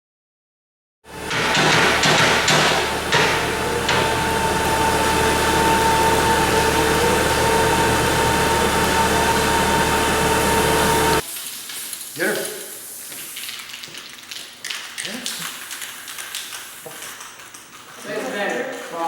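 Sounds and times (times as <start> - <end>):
steady whine: 1.2 - 11.2
sharp knocks: 1.3 - 4.3.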